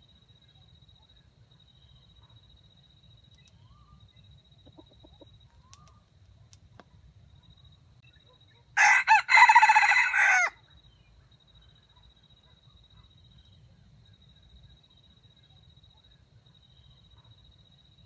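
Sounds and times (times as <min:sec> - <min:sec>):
rooster crowing: 0:08.8 - 0:10.6.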